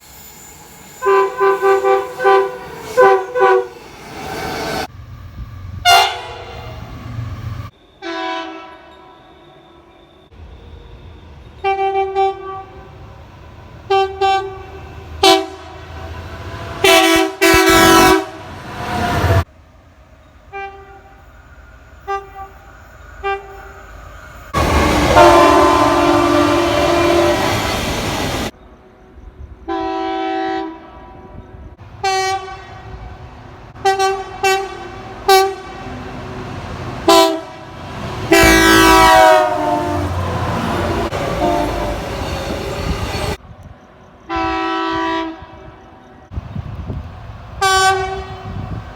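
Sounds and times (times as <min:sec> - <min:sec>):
locomotive air horn blasts: 0:01.0 - 0:03.8, 0:05.8 - 0:06.9, 0:08.0 - 0:09.4, 0:11.6 - 0:12.9, 0:13.9 - 0:19.4, 0:20.5 - 0:21.2, 0:22.0 - 0:23.8, 0:24.6 - 0:27.9, 0:29.7 - 0:31.4, 0:32.0 - 0:33.0, 0:33.8 - 0:36.1, 0:37.0 - 0:42.2, 0:44.3 - 0:45.9, 0:47.6 - 0:48.8.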